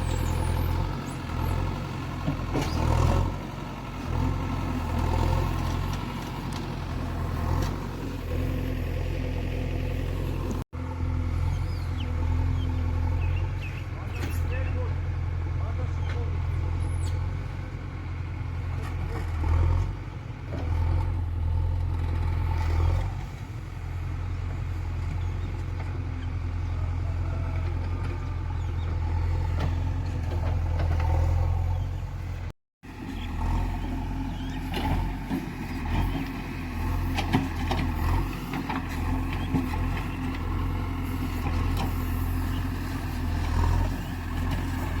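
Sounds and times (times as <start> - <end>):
diesel engine running: 0.0 - 45.0.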